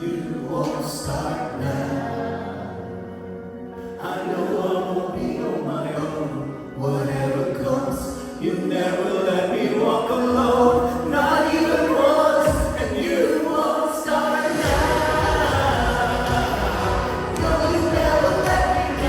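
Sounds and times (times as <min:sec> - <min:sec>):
voices singing sustained notes: 0:00.0 - 0:19.0
worship band music: 0:00.0 - 0:19.0
deep bass notes: 0:14.6 - 0:19.0.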